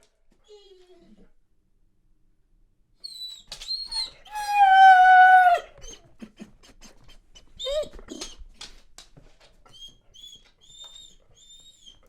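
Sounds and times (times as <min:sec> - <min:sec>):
dog whining and whimpering: 0:00.4 - 0:01.3, 0:03.0 - 0:06.0, 0:07.6 - 0:08.4, 0:09.7 - 0:12.0
dog yelp: 0:03.7 - 0:05.7.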